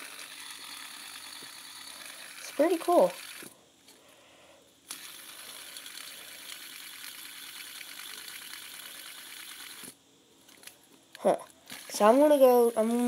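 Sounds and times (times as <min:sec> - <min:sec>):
fidget spinner whirring: 0:00.0 - 0:04.0, 0:04.7 - 0:13.0.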